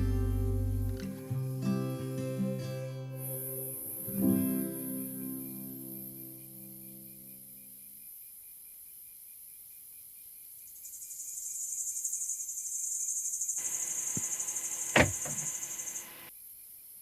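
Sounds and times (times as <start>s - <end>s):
rapidly pulsing insect chirr: 5.9s - 17.0s
crickets and katydids chirring: 6.0s - 16.3s
sharp click: 15.0s - 15.7s.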